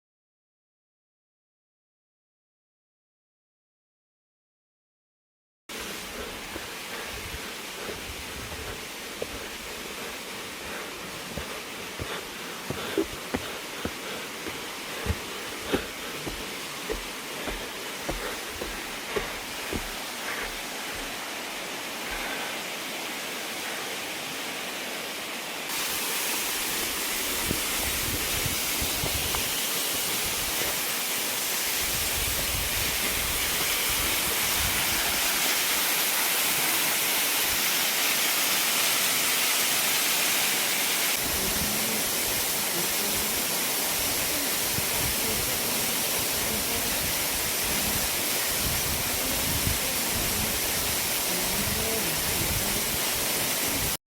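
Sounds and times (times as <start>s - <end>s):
water tumbling over rocks: 7.9s - 21.4s.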